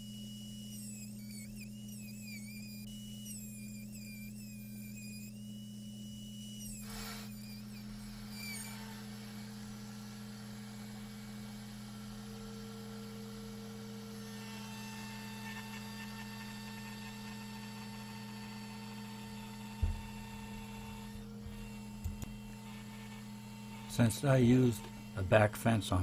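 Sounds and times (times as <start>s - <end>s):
steady electrical hum: 0.0s - 26.0s
short thump: 19.8s - 20.2s.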